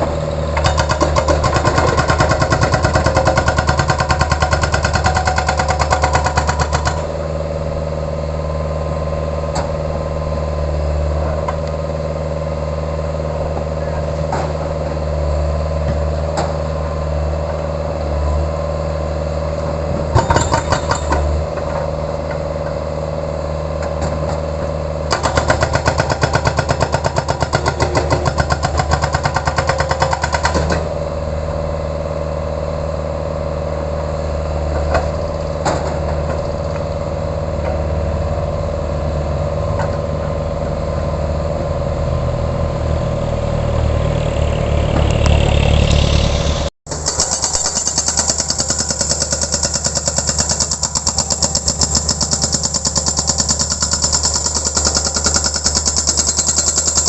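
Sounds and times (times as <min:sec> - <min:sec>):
diesel engine running: 0:00.0 - 0:57.0
hydraulic breaker hammering: 0:00.1 - 0:07.2, 0:19.9 - 0:22.8, 0:23.8 - 0:31.0, 0:46.9 - 0:57.0.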